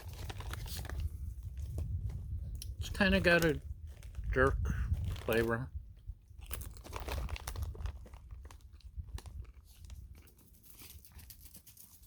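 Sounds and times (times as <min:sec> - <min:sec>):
potato chips crunching: 0:06.4 - 0:11.6.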